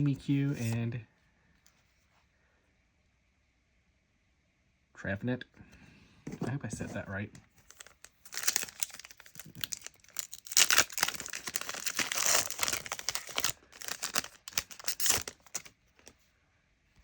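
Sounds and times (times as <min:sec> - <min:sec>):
foil wrapper crinkling: 0:07.6 - 0:16.1.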